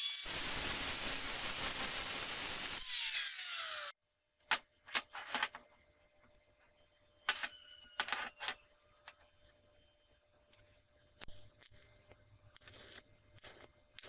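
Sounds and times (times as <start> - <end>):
hard parts clicking and knocking: 4.4 - 5.7.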